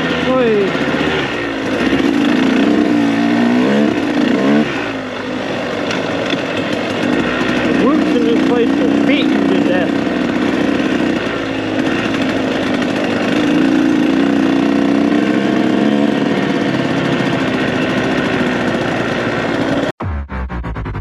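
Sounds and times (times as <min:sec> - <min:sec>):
dirt bike engine running: 0:00.0 - 0:20.0
low pulsing sound: 0:20.0 - 0:21.0.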